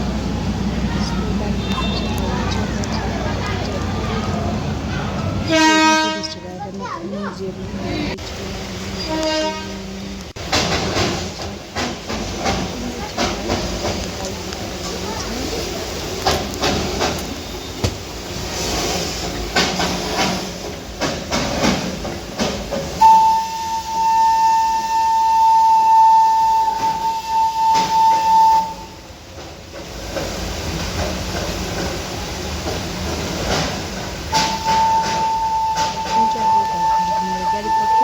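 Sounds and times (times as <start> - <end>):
train clattering and hissing: 0.0 - 38.0
train whistle blast: 5.5 - 6.4, 9.0 - 9.8, 23.0 - 29.0, 34.3 - 38.0.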